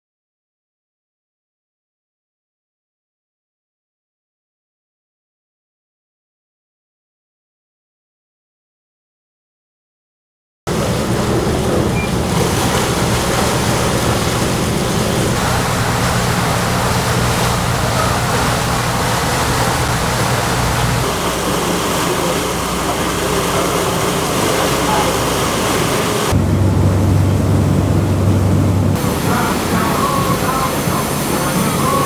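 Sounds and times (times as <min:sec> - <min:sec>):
boat engines droning: 0:10.7 - 0:32.0
rush of wind and water: 0:10.7 - 0:32.0.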